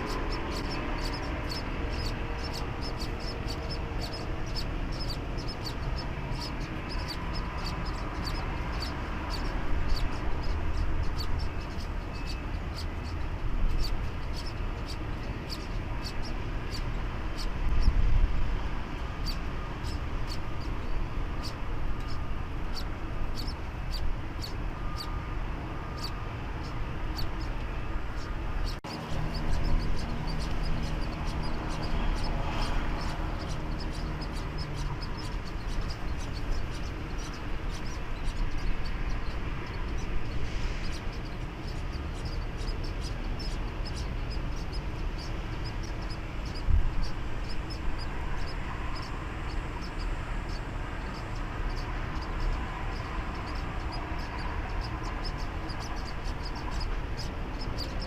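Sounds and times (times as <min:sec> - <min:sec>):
nestling birds peeping: 0:00.0 - 0:58.0.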